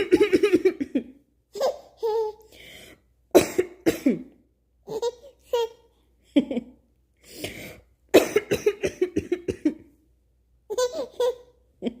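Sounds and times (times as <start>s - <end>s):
person coughing: 0.0s - 1.0s, 3.4s - 4.4s, 8.2s - 9.8s.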